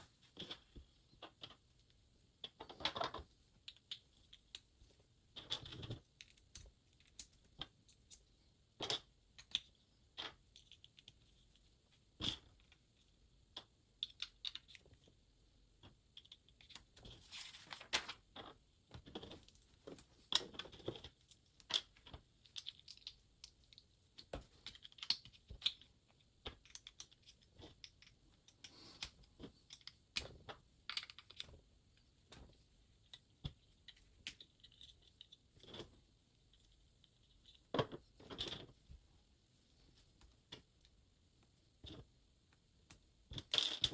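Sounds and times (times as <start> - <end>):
plastic bricks clicking and rattling: 15.8 - 31.7, 43.3 - 43.9.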